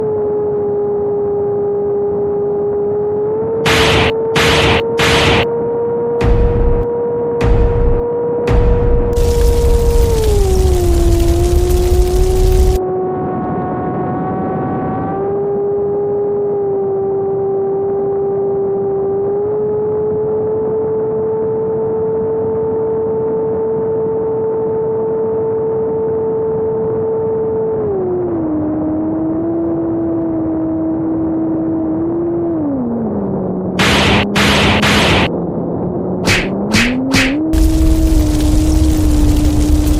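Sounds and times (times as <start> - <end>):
bursts of rushing noise: 3.7 - 5.6, 6.2 - 12.8, 33.8 - 35.4, 36.2 - 39.9.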